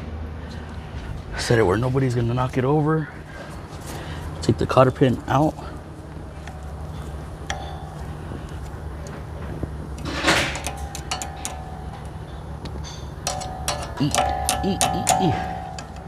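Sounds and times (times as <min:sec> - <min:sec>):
steady low hum: 0:00.0 - 0:16.0
light metal clicks: 0:06.4 - 0:16.0.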